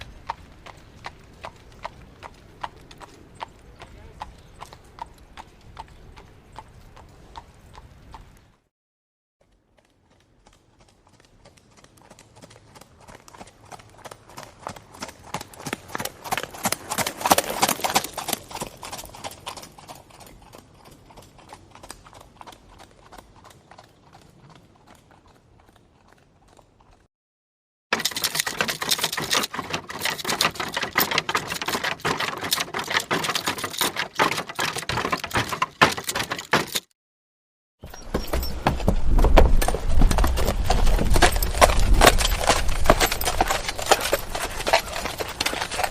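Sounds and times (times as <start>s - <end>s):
horse hoofbeats clip-clopping: 0.0s - 8.7s, 9.4s - 27.1s, 28.0s - 36.9s, 37.8s - 45.9s.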